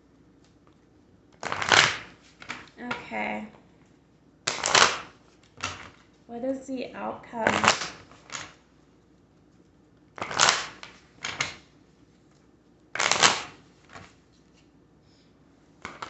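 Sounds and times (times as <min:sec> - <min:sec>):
cards being shuffled: 0:01.3 - 0:03.0, 0:04.5 - 0:06.1, 0:07.4 - 0:08.6, 0:10.2 - 0:11.7, 0:13.0 - 0:14.7, 0:15.8 - 0:16.0.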